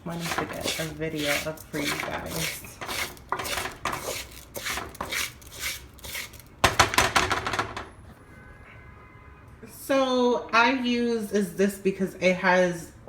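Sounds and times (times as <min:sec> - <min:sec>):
spoon scraping rice in a pot: 0:00.0 - 0:06.7.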